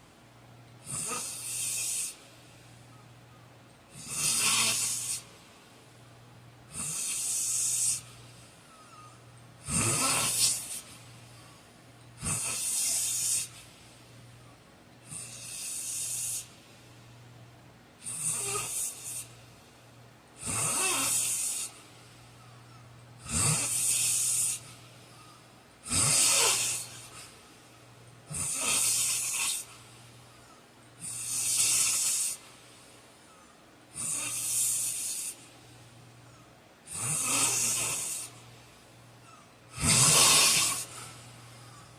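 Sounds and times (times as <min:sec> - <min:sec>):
steady low hum: 0:00.0 - 0:41.9
man snoring: 0:00.8 - 0:02.2, 0:03.9 - 0:05.2, 0:06.7 - 0:08.1, 0:09.6 - 0:10.8, 0:12.2 - 0:13.6, 0:15.1 - 0:16.5, 0:18.0 - 0:19.3, 0:20.4 - 0:21.8, 0:23.2 - 0:24.7, 0:25.8 - 0:27.2, 0:28.3 - 0:29.7, 0:31.0 - 0:32.4, 0:33.9 - 0:35.4, 0:36.9 - 0:38.4, 0:39.7 - 0:41.8.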